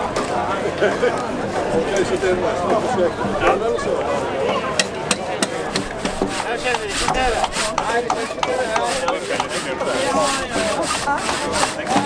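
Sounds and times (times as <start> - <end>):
sharp knocks: 4.8 - 12.0.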